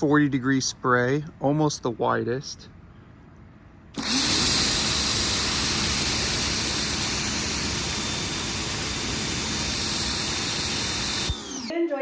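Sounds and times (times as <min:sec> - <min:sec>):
pressure washer spraying water: 0:04.0 - 0:11.7.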